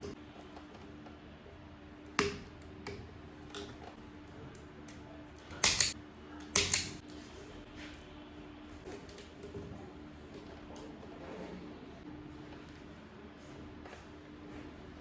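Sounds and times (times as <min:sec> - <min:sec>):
tools clicking and clattering: 0:05.5 - 0:07.0.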